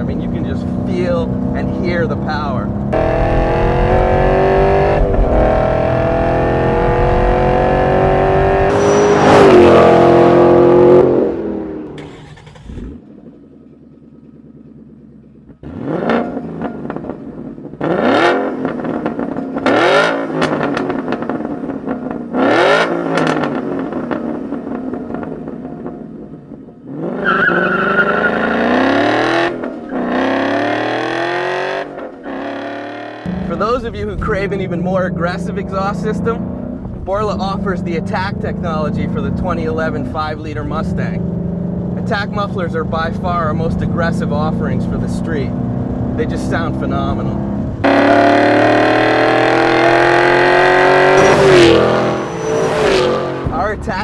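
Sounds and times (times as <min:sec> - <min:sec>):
engine throttle blips: 0:00.0 - 0:13.0, 0:33.3 - 0:54.0
car engine accelerating: 0:00.0 - 0:21.5, 0:32.4 - 0:54.0.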